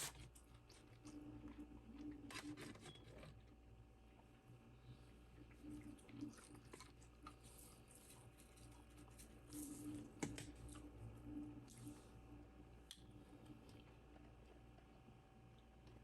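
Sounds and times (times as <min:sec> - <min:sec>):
chewing food close-up: 0:00.0 - 0:03.3, 0:05.3 - 0:12.0.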